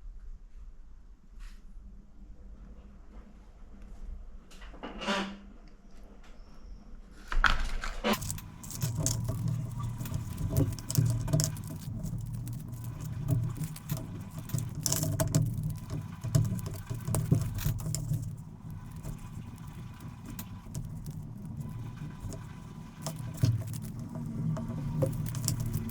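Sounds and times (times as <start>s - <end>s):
keys jingling on keychain: 8.2s - 21.7s.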